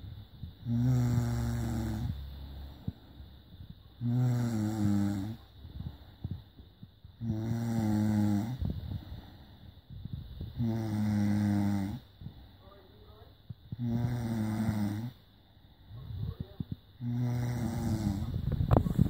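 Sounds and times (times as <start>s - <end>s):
quiet breathing: 0.0s - 19.0s
person snoring: 0.6s - 2.9s, 4.0s - 5.5s, 7.2s - 9.3s, 10.6s - 12.0s, 13.7s - 15.2s, 17.0s - 19.0s.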